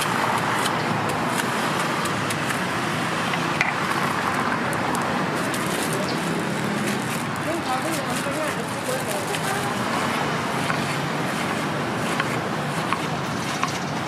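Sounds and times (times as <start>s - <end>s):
street traffic: 0.0s - 14.0s.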